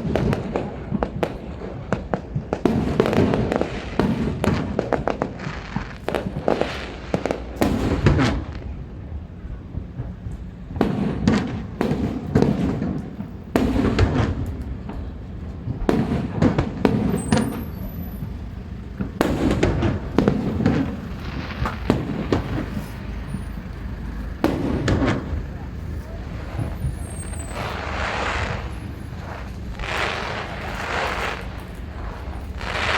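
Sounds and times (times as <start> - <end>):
fireworks bangs: 0.0 - 32.9
low rumble: 13.0 - 32.9.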